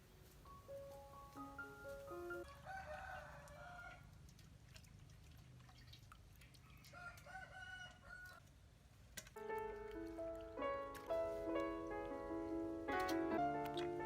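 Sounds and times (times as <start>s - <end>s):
rooster crowing faintly: 2.4s - 4.1s, 6.6s - 8.4s.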